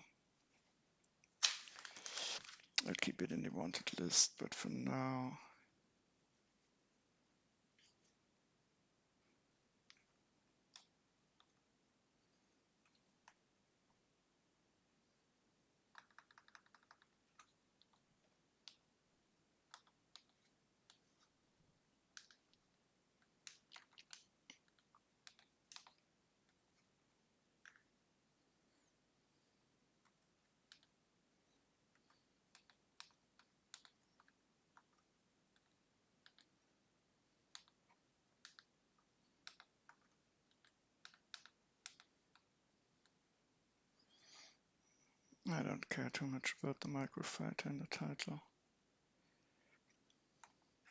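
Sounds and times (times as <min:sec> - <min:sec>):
typing on computer keyboard: 0:15.9 - 0:18.0, 0:23.4 - 0:26.0.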